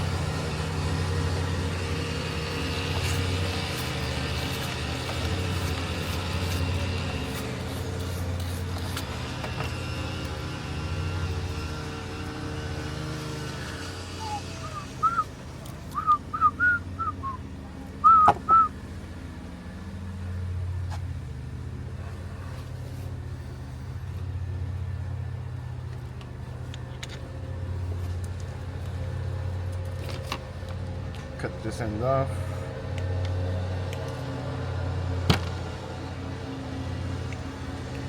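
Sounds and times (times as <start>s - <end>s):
short whistled chirps: 14.2s - 15.3s, 15.9s - 17.4s, 18.0s - 18.7s.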